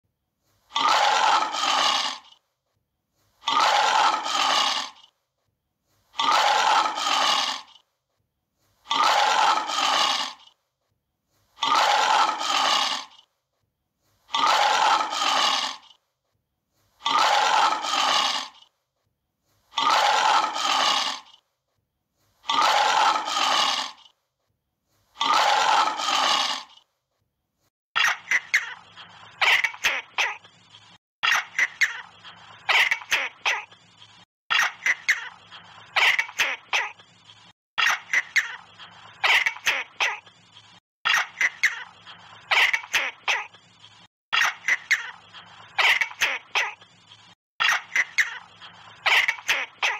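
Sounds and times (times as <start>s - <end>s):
animal call: 0.7s - 2.4s, 3.4s - 5.1s, 6.1s - 7.8s, 8.9s - 10.6s, 11.6s - 13.3s, 14.3s - 16.0s, 17.0s - 18.7s, 19.7s - 21.4s, 22.4s - 24.2s, 25.2s - 26.8s.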